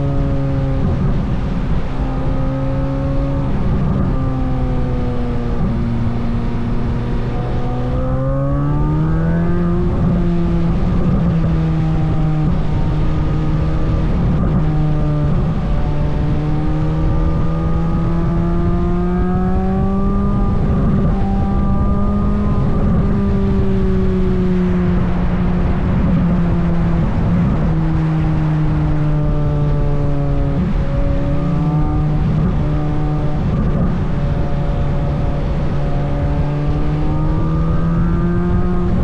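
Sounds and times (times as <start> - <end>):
car engine on trailing throttle: 0.0 - 39.0.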